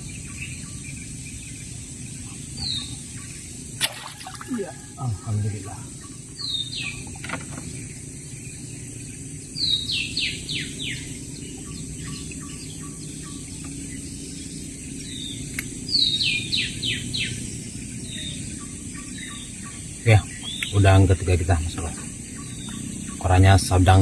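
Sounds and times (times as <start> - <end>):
bird whistling song: 18.0 - 20.8.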